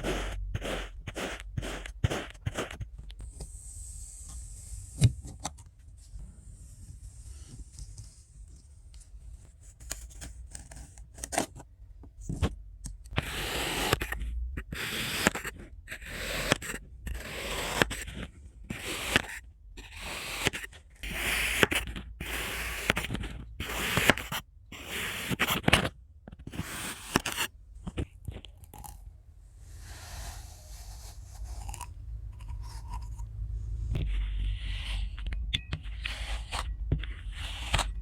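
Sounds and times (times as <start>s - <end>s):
knife cutting crunchy sand: 0.0s - 2.8s.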